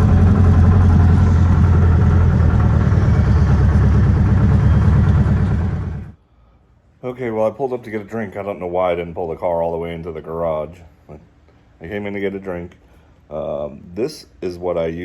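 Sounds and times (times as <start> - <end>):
car engine running: 0.0 - 6.2.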